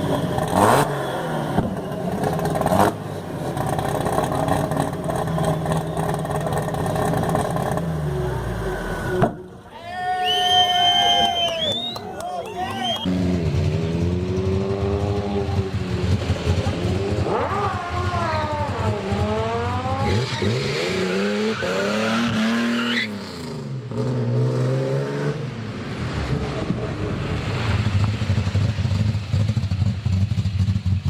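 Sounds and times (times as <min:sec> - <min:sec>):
car engine revving: 0:00.0 - 0:09.6, 0:12.8 - 0:31.0
car engine idling: 0:01.8 - 0:09.7.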